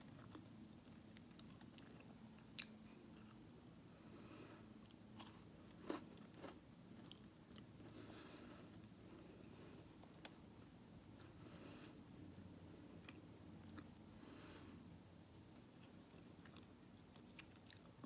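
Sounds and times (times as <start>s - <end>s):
person chewing food: 0.0s - 3.4s, 4.8s - 10.8s, 12.3s - 14.0s, 15.6s - 18.0s
low steady hum: 0.0s - 18.0s.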